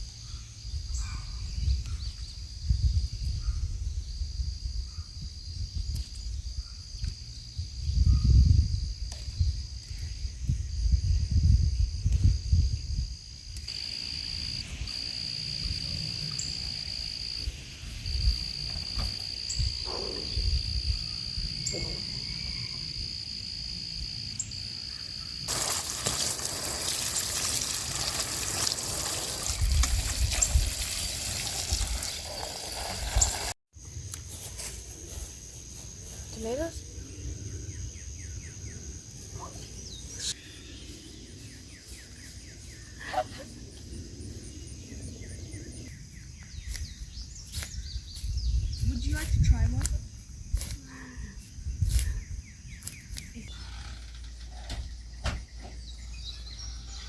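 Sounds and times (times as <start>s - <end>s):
high-pitched insect drone: 13.6s - 34.0s
running water rushing: 25.5s - 33.6s.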